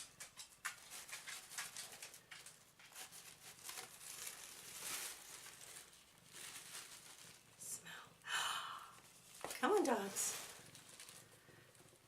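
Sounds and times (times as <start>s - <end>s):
packaging rustling and crinkling: 0.0s - 7.7s, 9.0s - 12.0s.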